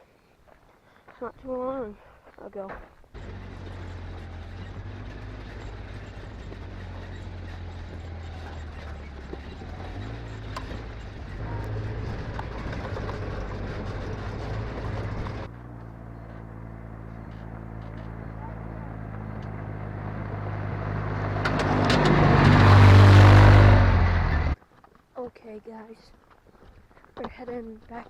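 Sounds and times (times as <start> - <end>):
quad engine running: 3.2 - 24.6.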